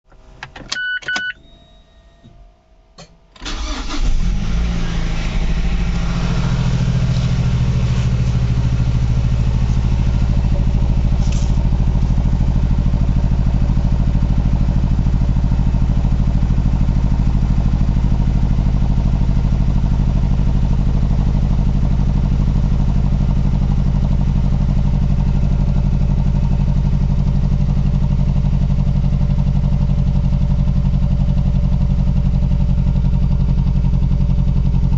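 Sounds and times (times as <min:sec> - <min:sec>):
car engine cranking and starting: 0:00.0 - 0:15.2
rough engine idle: 0:03.5 - 0:34.9.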